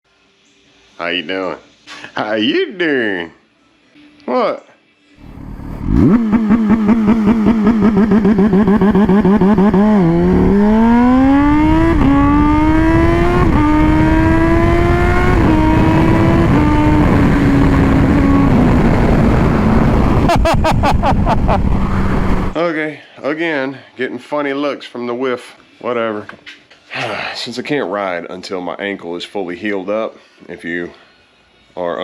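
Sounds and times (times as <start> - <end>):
motorcycle engine accelerating: 5.2 - 22.6.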